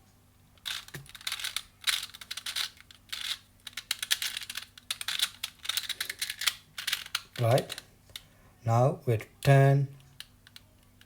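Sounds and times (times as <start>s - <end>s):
puzzle cube clicking and rattling: 0.6s - 8.2s.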